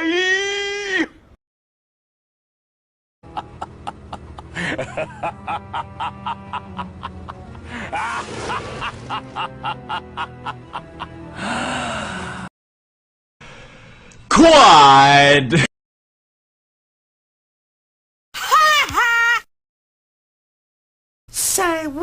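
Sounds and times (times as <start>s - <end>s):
villain's evil laugh: 3.3s - 11.3s.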